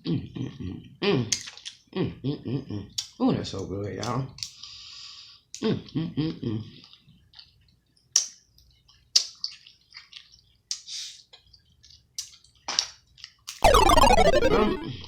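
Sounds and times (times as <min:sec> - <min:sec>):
loud sound sliding down in pitch: 0:13.6 - 0:15.0.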